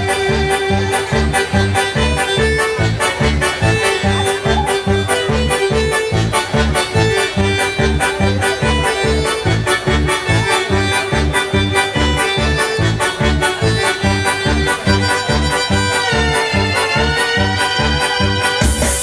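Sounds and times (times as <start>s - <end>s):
accordion-like keyboard melody: 0.0s - 19.0s
fast bass and drum beat: 17.9s - 19.0s.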